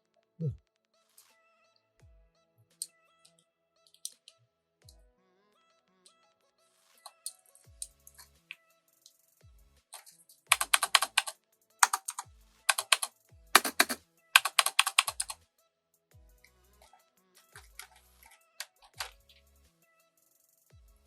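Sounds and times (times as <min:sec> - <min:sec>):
mechanical keyboard typing: 0:10.5 - 0:15.4.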